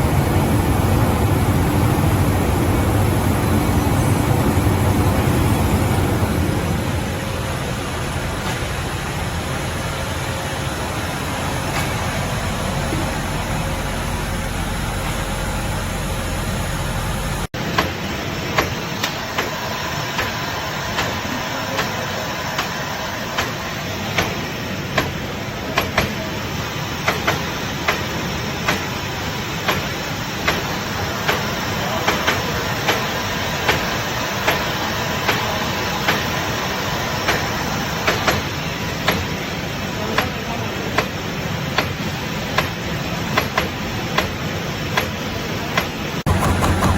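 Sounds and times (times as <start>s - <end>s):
machinery running: 0.0s - 17.5s, 46.2s - 46.9s.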